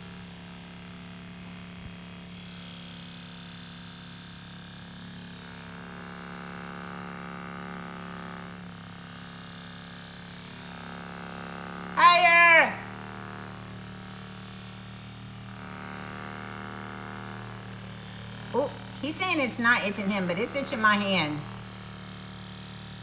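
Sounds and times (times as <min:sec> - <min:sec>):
massage gun humming: 0:10.2 - 0:23.0.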